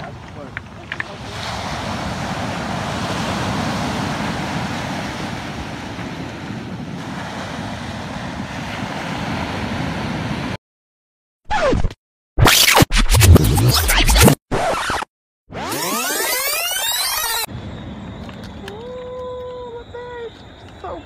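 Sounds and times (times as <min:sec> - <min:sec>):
rough sea surf: 0:00.0 - 0:10.6.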